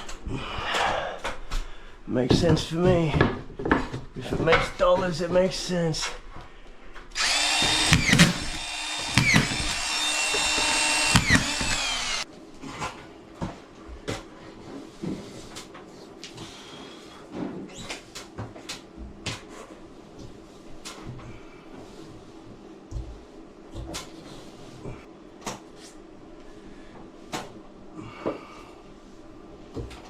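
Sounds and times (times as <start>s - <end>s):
power drill whining: 7.1s - 12.3s.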